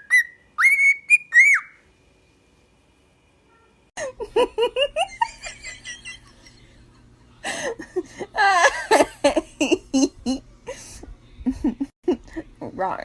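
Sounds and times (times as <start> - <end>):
person giggling and laughing: 4.0 - 12.6.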